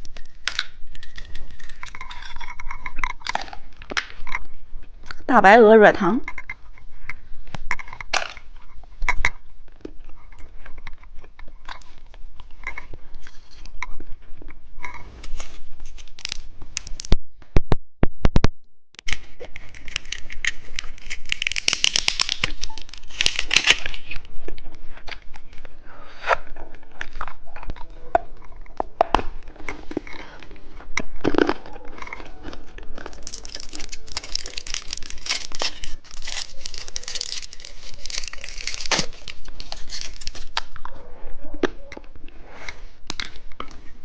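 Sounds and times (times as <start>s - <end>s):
plastic wrapper crinkling: 0.0s - 5.4s, 15.2s - 17.2s, 19.0s - 25.7s, 26.3s - 41.0s.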